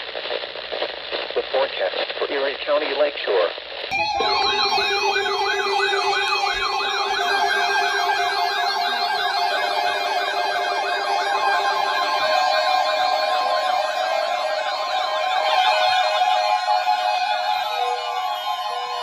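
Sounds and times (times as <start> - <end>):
electronic siren yelping: 3.9 - 19.0
steady low siren tone: 3.9 - 19.0.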